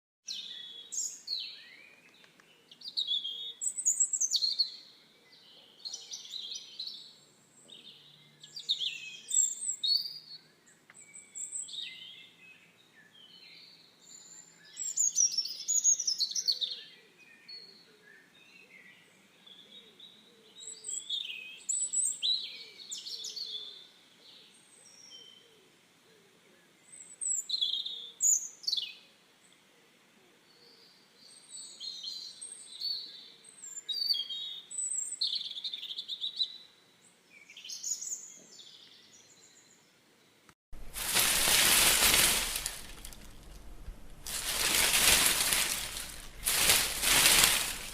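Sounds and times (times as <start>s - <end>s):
birds chirping and warbling: 40.8s - 47.9s.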